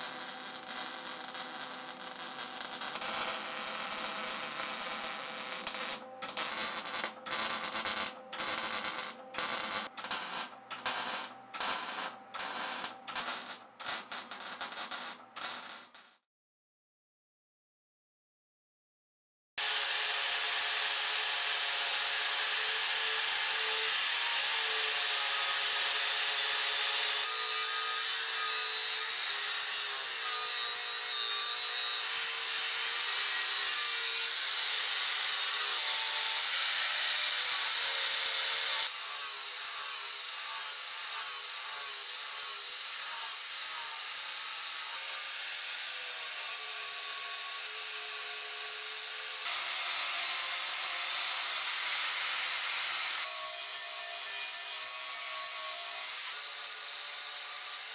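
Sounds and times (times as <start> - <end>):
welder arc crackling and hissing: 0.0 - 16.1.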